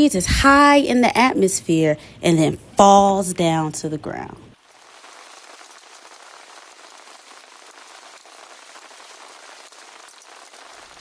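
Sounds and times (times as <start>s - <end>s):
hail pattering: 4.6s - 11.0s.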